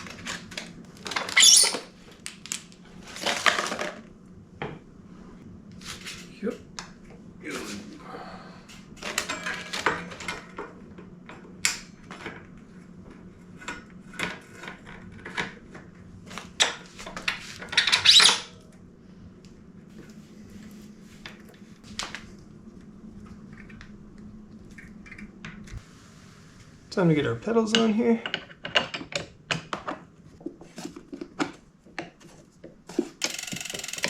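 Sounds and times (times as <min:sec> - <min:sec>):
bicycle parts and tools clinking: 0:08.7 - 0:12.5, 0:33.2 - 0:34.0.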